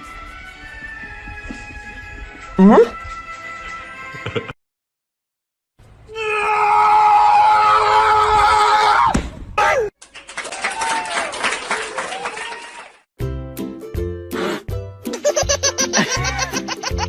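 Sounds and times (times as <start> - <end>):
long loud scream: 6.1 - 9.9.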